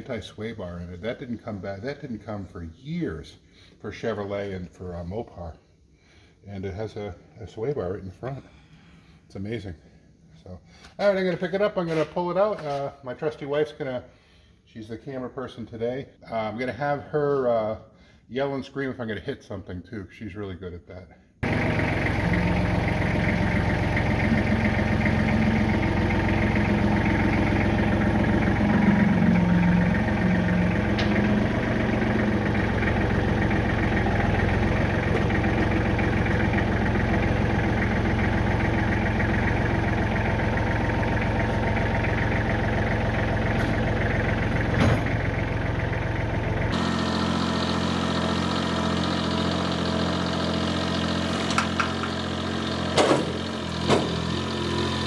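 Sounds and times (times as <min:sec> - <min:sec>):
tractor diesel engine running: 0:21.4 - 0:55.0
metal clank: 0:44.7 - 0:45.2, 0:51.4 - 0:52.3, 0:52.9 - 0:54.3.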